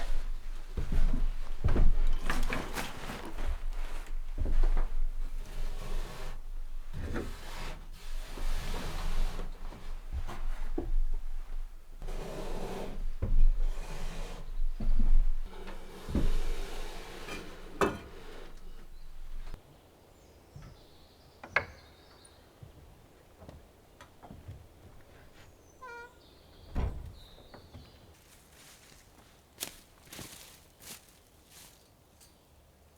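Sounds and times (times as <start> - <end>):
wood scraping and rubbing: 12.0 - 19.6.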